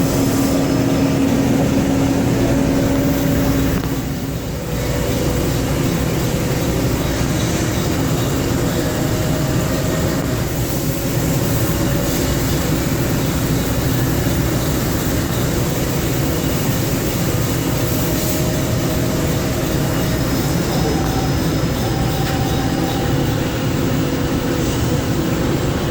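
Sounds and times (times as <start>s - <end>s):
faint steady whines: 0.0s - 25.9s
lathe machining noise: 0.0s - 25.9s.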